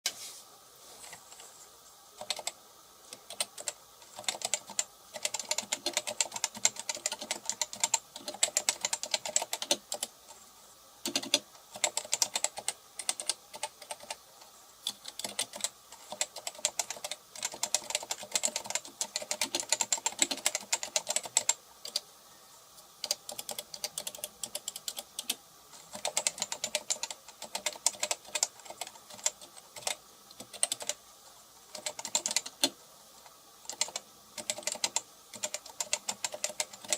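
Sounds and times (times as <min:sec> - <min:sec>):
keyboard typing: 0:02.2 - 0:10.2, 0:11.0 - 0:22.1, 0:23.0 - 0:31.0, 0:31.7 - 0:32.8, 0:33.7 - 0:36.9.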